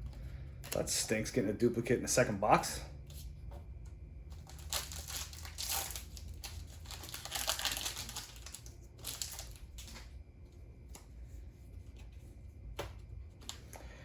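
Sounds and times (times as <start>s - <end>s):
foil wrapper crinkling: 4.4s - 10.2s.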